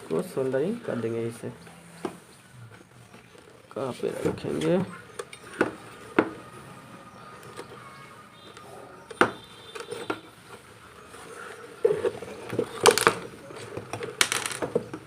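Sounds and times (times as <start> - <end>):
tools clicking and knocking: 12.8 - 15.0.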